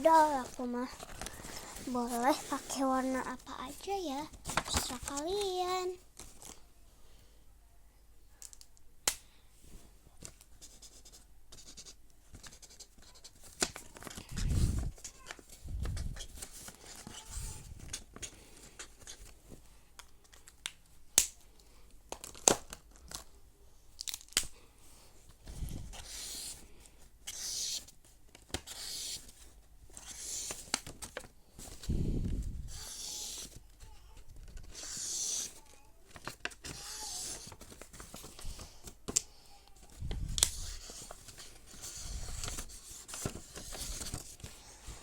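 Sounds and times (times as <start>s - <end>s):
marker scratching on paper: 10.6s - 13.3s, 25.9s - 26.5s, 27.3s - 27.8s, 28.7s - 29.2s, 32.7s - 33.5s, 34.6s - 35.6s, 36.7s - 37.4s.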